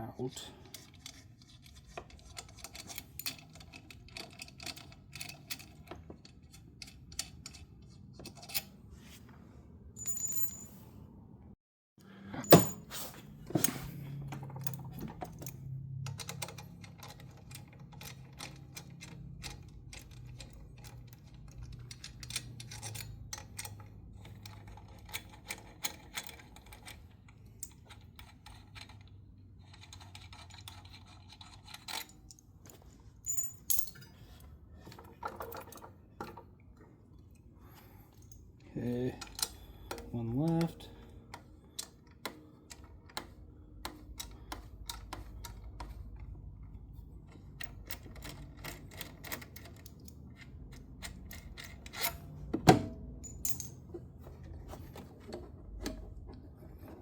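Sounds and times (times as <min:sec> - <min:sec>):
metal tools clinking: 0:10.0 - 0:10.9, 0:12.4 - 0:15.7, 0:29.7 - 0:36.4, 0:53.2 - 0:54.5
sharp metal clank: 0:12.5 - 0:13.1.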